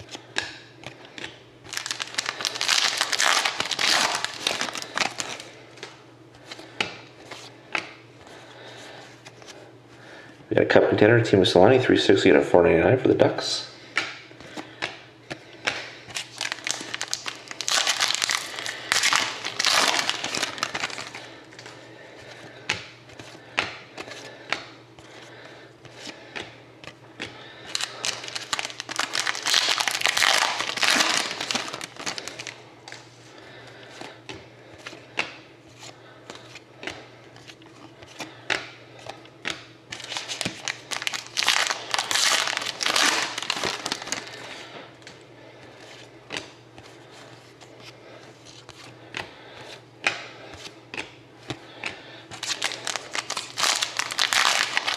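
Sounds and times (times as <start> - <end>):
card wrappers crinkling: 1.6 - 5.9, 16.1 - 21.8, 27.6 - 33.1, 39.9 - 44.7, 52.3 - 54.9.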